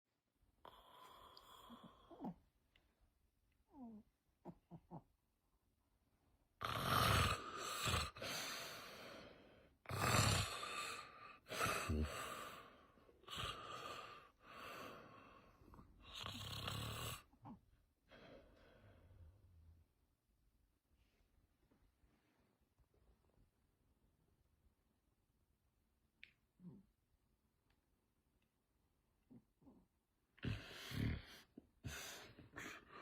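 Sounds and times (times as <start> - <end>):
man snoring: 6.6 - 8.8, 9.8 - 15.2, 16.0 - 17.3, 30.4 - 31.5.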